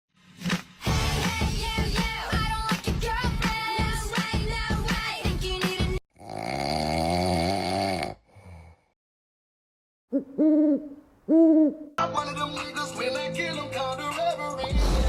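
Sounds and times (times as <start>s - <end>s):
short hooting calls: 10.1s - 12.0s.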